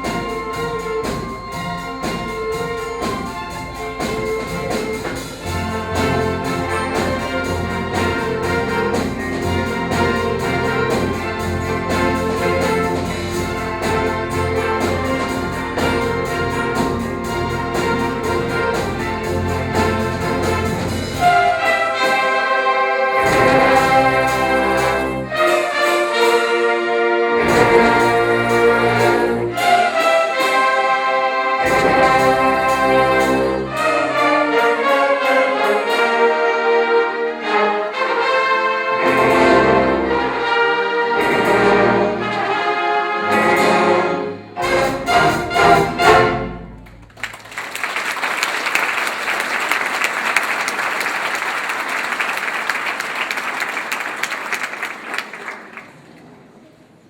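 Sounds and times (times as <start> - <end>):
orchestral music led by brass: 0.0 - 50.1
audience applause: 46.8 - 56.2.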